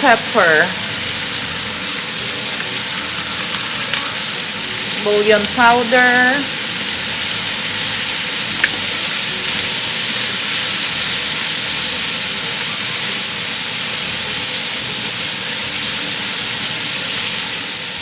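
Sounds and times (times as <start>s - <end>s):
chicken sizzling in hot oil: 0.0s - 18.0s.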